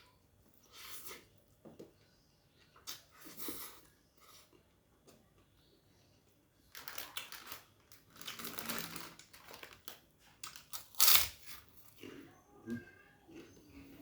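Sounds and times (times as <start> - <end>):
small clicks and rustles: 6.7 - 11.2.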